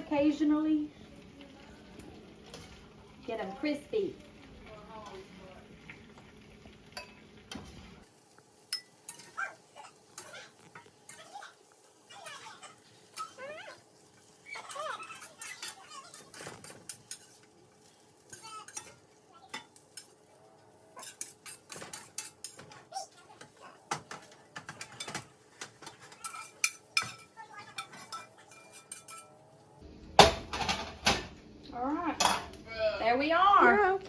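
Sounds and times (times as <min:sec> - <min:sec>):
metal utensil scraping a pan: 0:06.9 - 0:08.1, 0:08.7 - 0:29.4.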